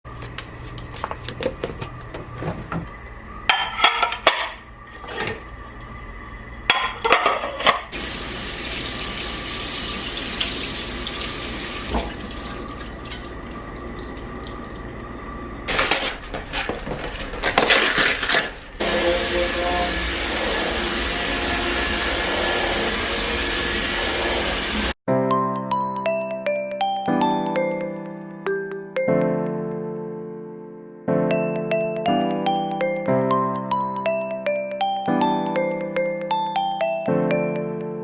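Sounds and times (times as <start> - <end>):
dishes and cutlery clattering: 3.5 - 5.3, 6.7 - 7.9
tap running: 7.9 - 14.9.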